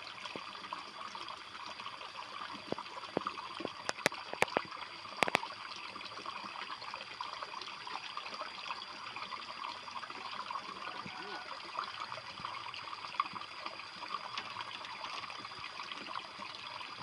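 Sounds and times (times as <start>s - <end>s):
water trickling and splashing: 0.0s - 17.0s
sharp clicks: 3.7s - 5.4s.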